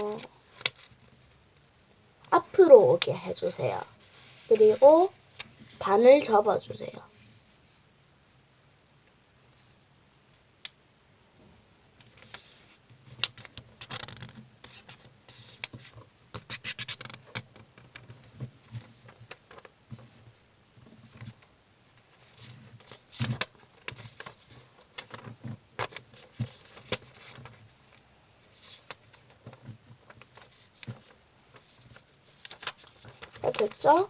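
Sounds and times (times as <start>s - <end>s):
paper folding and creasing: 12.1s - 20.4s, 22.0s - 34.0s.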